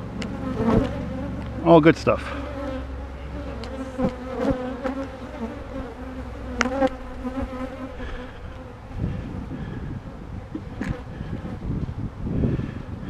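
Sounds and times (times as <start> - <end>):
bees buzzing: 0.0 - 11.7
low rumble: 5.1 - 13.0.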